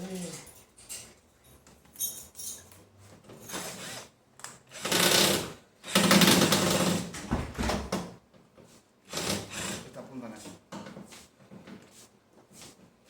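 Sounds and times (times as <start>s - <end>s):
electric drill driver running: 4.7s - 7.0s, 9.1s - 9.8s.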